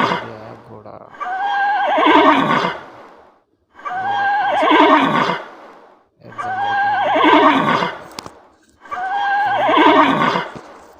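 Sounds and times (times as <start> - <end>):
horse neighing: 0.0 - 0.4, 1.1 - 2.8, 3.8 - 5.4, 6.2 - 8.0, 8.8 - 10.6.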